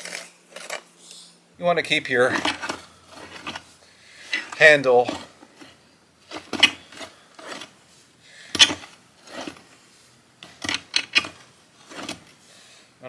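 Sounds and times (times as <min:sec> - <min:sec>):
post hole digger grinding soil: 0:02.0 - 0:07.8, 0:08.5 - 0:09.7.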